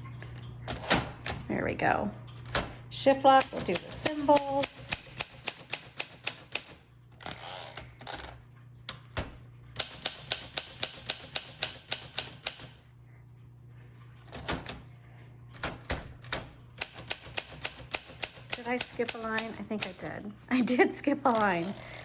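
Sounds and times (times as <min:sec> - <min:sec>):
manual typewriter typing: 0:00.7 - 0:01.5, 0:02.4 - 0:12.8, 0:14.3 - 0:14.8, 0:15.5 - 0:20.3, 0:21.3 - 0:22.0.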